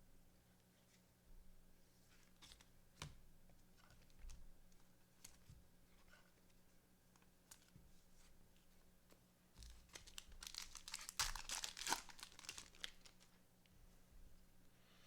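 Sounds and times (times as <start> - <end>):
foil wrapper tearing and crinkling: 9.8 - 13.3.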